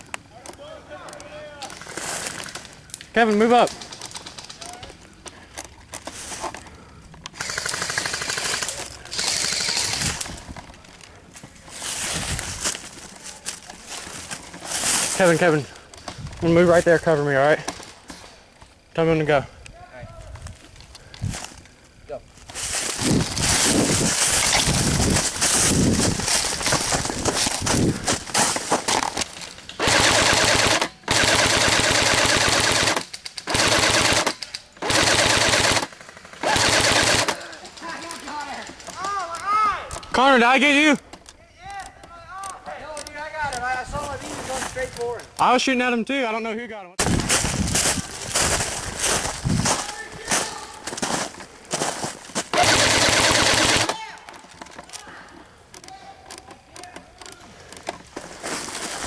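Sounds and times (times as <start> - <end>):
airsoft rifle firing full auto: 7.4 - 10.3, 29.8 - 37.5, 52.5 - 54.1.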